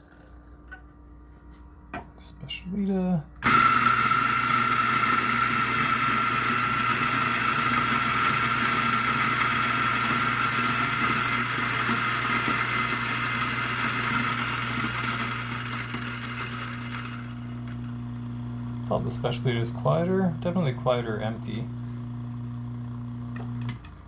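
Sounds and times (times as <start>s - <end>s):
coffee grinder grinding beans: 3.4s - 24.0s.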